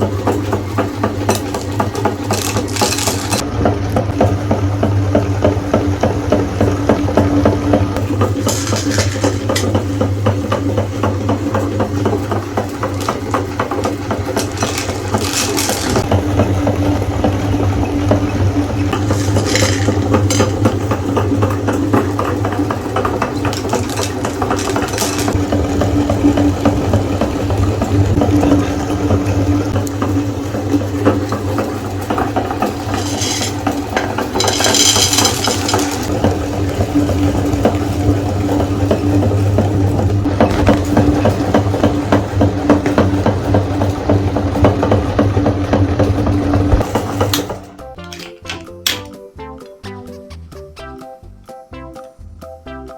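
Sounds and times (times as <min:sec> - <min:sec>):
meat grinder motor hum: 0:00.0 - 0:47.8
candies crackling and rattling: 0:01.3 - 0:03.4, 0:08.3 - 0:09.9, 0:12.7 - 0:16.1, 0:18.9 - 0:21.1, 0:21.8 - 0:26.5, 0:32.6 - 0:37.1.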